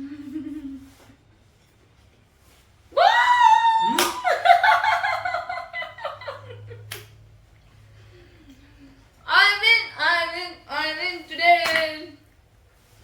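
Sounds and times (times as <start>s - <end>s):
woman laughing: 0.0s - 1.0s, 3.7s - 6.9s
woman squealing: 3.0s - 4.4s.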